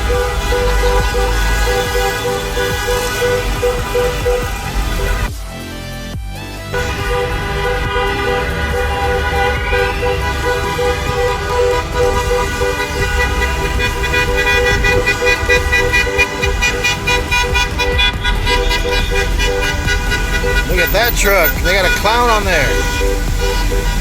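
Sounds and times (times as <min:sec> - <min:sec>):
car horns honking: 0:00.0 - 0:05.4, 0:06.7 - 0:24.0
low rumble of traffic: 0:00.0 - 0:24.0
quick repeated horn beeps: 0:06.8 - 0:24.0.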